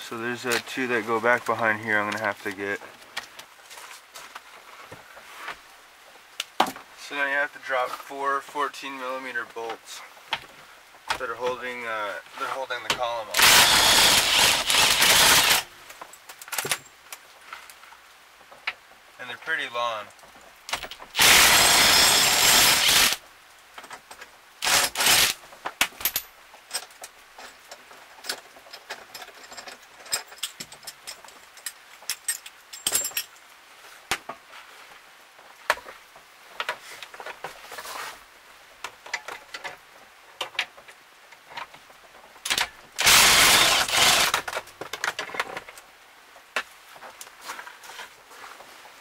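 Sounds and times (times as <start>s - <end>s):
power tool running: 13.4s - 15.6s, 21.2s - 23.2s, 24.6s - 25.4s, 43.0s - 44.4s
clinks and knocks of tools: 20.7s - 21.2s, 25.7s - 33.5s.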